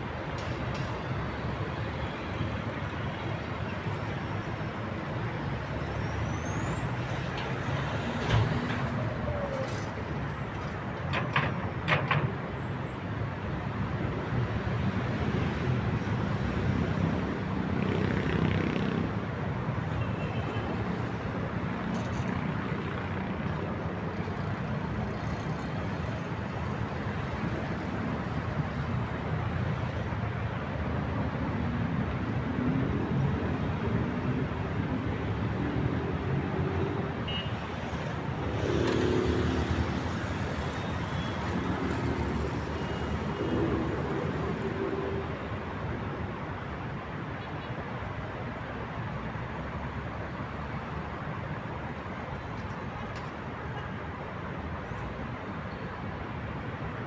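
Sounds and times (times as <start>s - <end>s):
city traffic din: 0.0s - 57.0s
heavy vehicles rumbling: 0.0s - 57.0s.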